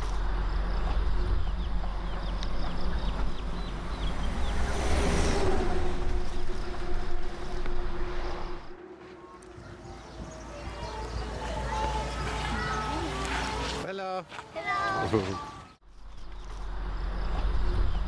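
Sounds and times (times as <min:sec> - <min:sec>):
steady low rumble: 0:00.0 - 0:12.3, 0:15.8 - 0:18.0
steady low hum: 0:00.0 - 0:13.2.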